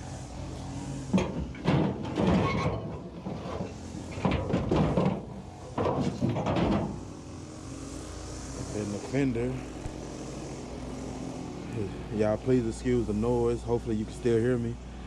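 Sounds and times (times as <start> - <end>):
metal car panels clattering: 1.2 - 7.0.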